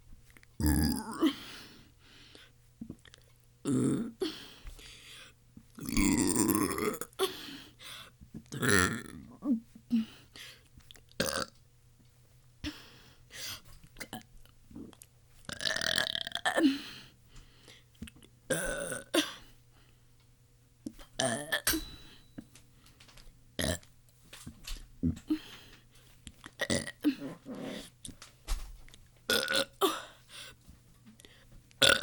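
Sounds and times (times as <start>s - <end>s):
person burping: 0.6s - 1.4s, 3.6s - 4.3s, 5.8s - 7.3s, 8.5s - 9.4s, 11.2s - 11.5s, 14.8s - 16.8s, 18.5s - 19.4s, 21.2s - 22.0s, 23.6s - 23.8s, 26.6s - 27.8s, 29.3s - 30.2s, 31.8s - 32.0s.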